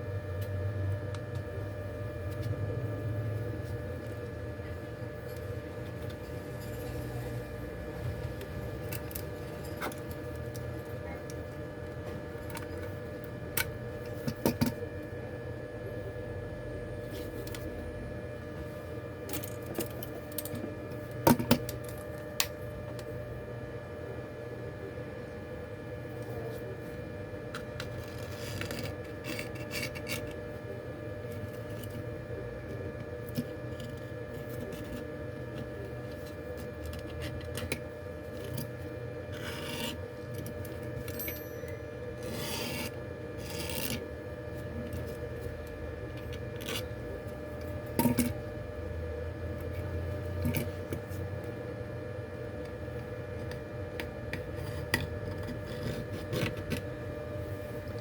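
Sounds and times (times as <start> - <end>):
electrical hum: 0.0 - 58.0
tools scraping phone glass: 27.6 - 30.4, 33.3 - 44.0, 46.2 - 47.0, 54.3 - 56.9.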